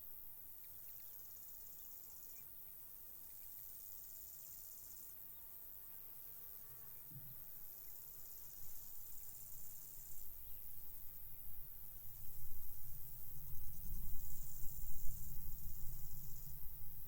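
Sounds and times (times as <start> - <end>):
crickets chirping: 0.0 - 17.0
wind rumbling on microphone: 10.1 - 17.0.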